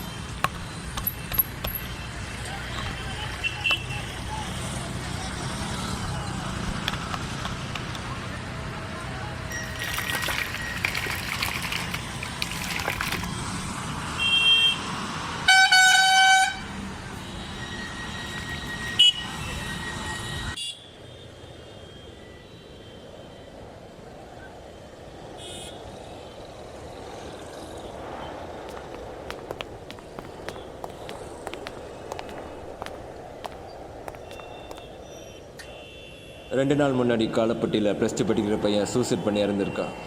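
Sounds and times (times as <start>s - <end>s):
street traffic noise: 0.0s - 40.0s
vehicle horn honking: 15.5s - 16.6s
steady background noise: 21.2s - 36.0s.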